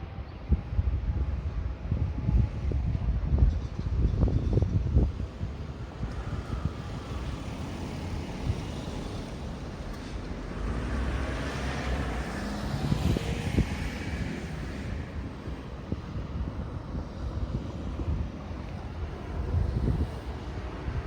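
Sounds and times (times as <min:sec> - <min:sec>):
wind on microphone: 0:00.0 - 0:21.0
road vehicle passing: 0:05.0 - 0:21.0.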